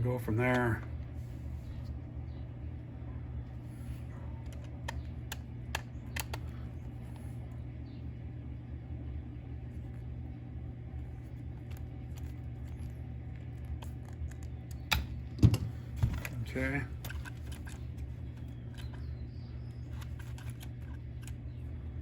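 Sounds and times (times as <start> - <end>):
steady low hum: 0.0 - 22.0
small plastic parts clicking: 4.4 - 6.6, 17.0 - 21.6.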